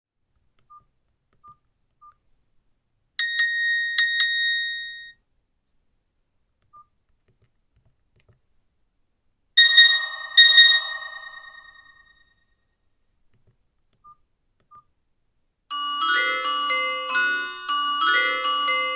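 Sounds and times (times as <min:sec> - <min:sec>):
phone ringtone chiming: 0:03.2 - 0:05.2, 0:09.6 - 0:12.2, 0:15.7 - 0:18.9
short phone beeps: 0:09.6 - 0:12.2.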